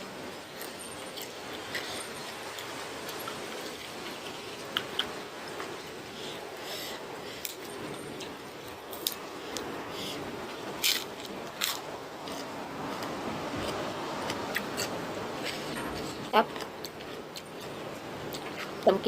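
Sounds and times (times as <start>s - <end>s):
person chewing: 10.8s - 18.8s.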